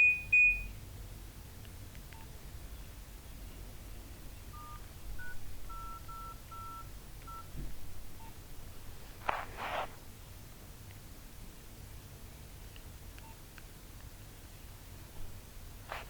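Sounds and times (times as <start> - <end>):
two-tone keypad beeps: 0.0 - 0.7, 4.6 - 7.5
scraping or rustling noise: 9.0 - 10.0.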